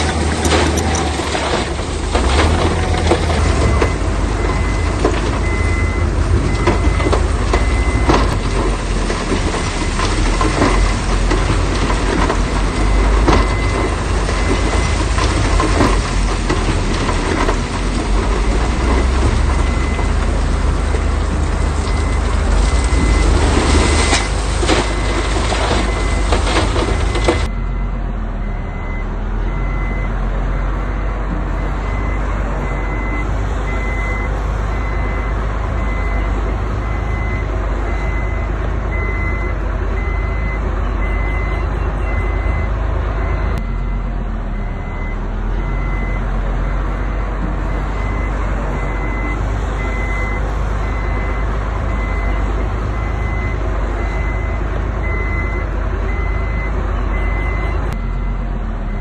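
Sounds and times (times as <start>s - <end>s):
diesel machinery running: 0.0s - 59.0s
reversing alarm beeping: 2.4s - 8.6s, 18.7s - 20.3s, 21.8s - 59.0s.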